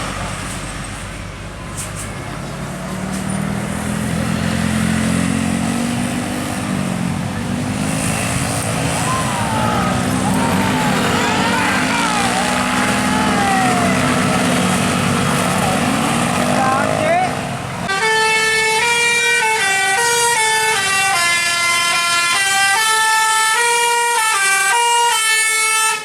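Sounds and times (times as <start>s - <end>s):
bus engine running: 0.0s - 18.9s
voices calling out: 7.0s - 17.9s.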